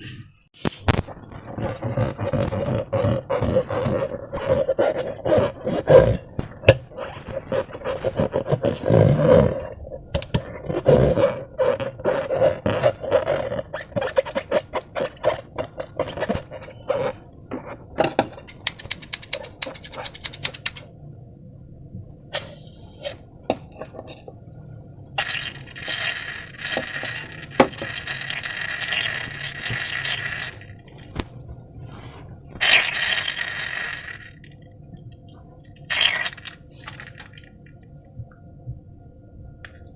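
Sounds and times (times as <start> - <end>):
slime squelching: 25.2 - 34.6, 35.3 - 37.6.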